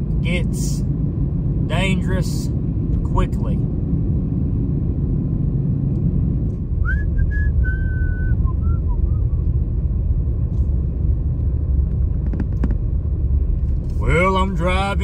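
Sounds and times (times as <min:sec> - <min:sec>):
vehicle rumble from inside cab: 0:00.0 - 0:15.0
short whistle-like notes: 0:06.8 - 0:09.3.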